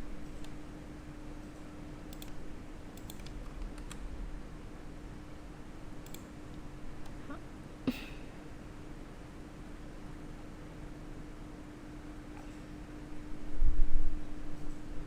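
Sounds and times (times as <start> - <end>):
low electrical hum: 0.0 - 15.0
sharp computer clicks: 1.4 - 4.0, 6.0 - 6.6.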